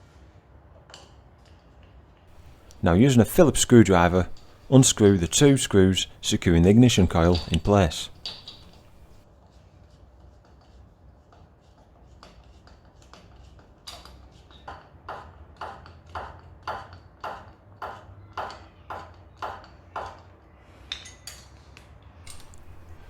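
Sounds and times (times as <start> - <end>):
screwdriver clicking on screws: 2.3 - 9.2, 22.3 - 23.0.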